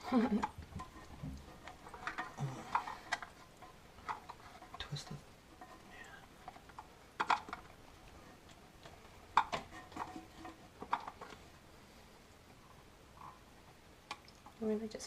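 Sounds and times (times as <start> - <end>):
toilet tank parts clicking: 0.3 - 5.8, 6.4 - 7.8, 8.5 - 11.4
sharp plastic clacks: 6.3 - 7.8.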